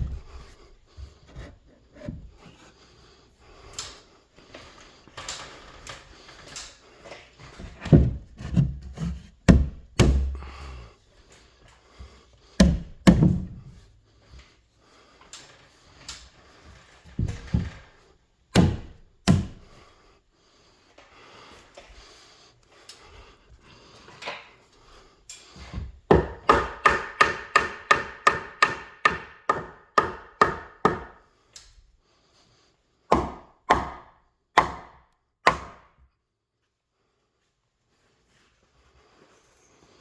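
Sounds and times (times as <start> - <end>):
wood rubbing and scraping: 0.0 - 3.2, 4.5 - 10.6
wooden boards knocking: 9.4 - 10.4.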